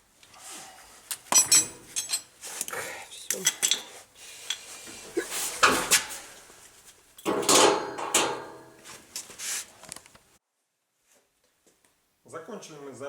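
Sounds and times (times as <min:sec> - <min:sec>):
metal tools clattering: 0:01.3 - 0:02.4, 0:03.3 - 0:03.9, 0:07.2 - 0:08.9.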